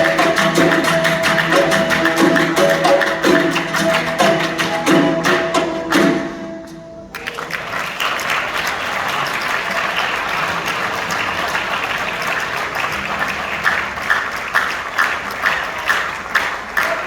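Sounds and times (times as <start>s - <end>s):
audience applauding: 0.0s - 6.3s, 7.1s - 17.0s
music: 0.0s - 7.5s.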